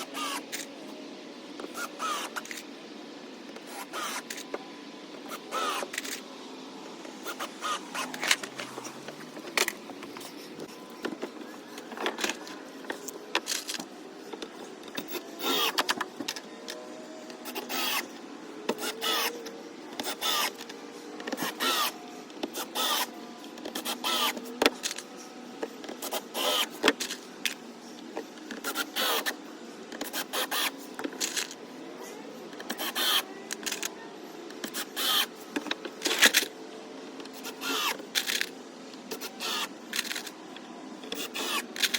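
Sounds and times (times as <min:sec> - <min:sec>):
small electric motor whirring: 0:00.0 - 0:00.7, 0:01.6 - 0:02.7, 0:03.6 - 0:04.6, 0:05.2 - 0:06.2, 0:07.2 - 0:25.3, 0:25.9 - 0:27.6, 0:28.5 - 0:29.4, 0:30.0 - 0:31.6, 0:32.6 - 0:33.9, 0:34.5 - 0:36.5, 0:37.3 - 0:38.5, 0:39.1 - 0:40.3, 0:41.1 - 0:41.9.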